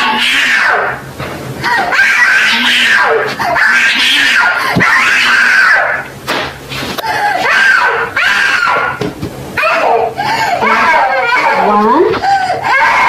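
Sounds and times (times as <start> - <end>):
child screaming and crying: 7.2 - 9.0, 9.6 - 13.0.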